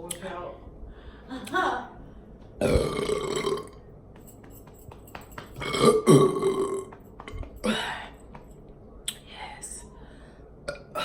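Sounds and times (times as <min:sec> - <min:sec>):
person burping: 0:02.6 - 0:03.8, 0:05.6 - 0:06.9, 0:10.7 - 0:11.0.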